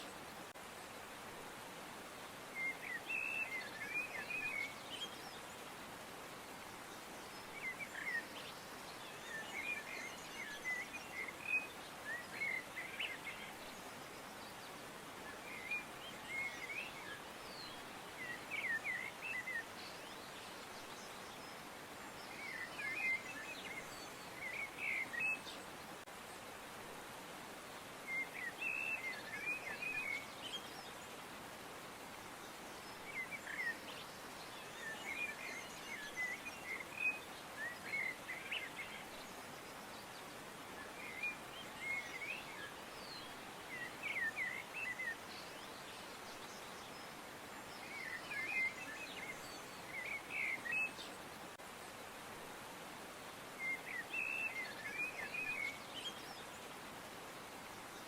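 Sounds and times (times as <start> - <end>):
songbirds chirping: 0.0 - 58.0
steady background hiss: 0.0 - 58.0.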